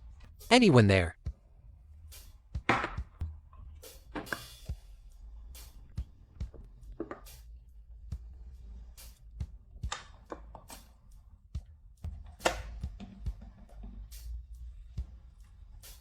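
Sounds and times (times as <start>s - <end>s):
soft background music: 1.2s - 16.0s.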